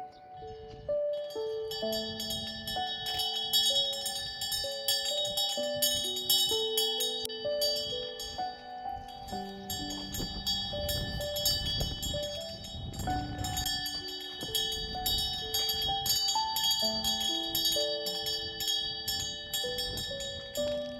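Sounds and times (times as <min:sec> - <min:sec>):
bell-like melody: 0:00.0 - 0:20.9
high ringing tones: 0:00.0 - 0:20.9.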